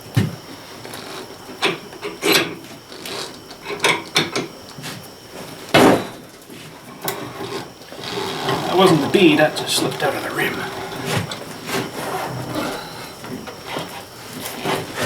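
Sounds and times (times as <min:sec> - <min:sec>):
rubber scraping on metal: 0:07.3 - 0:12.8.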